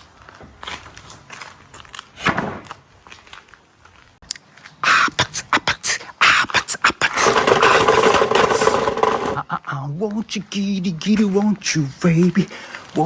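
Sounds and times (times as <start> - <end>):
marbles clattering on rails: 7.2 - 9.4.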